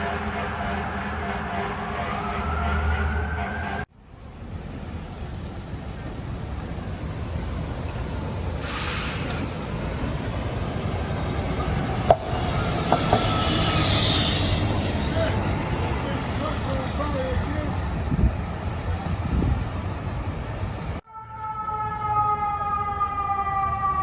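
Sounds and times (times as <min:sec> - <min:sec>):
heavy street traffic rumble: 0:03.4 - 0:21.0
short hiss: 0:08.6 - 0:09.4
siren winding up: 0:10.1 - 0:16.3.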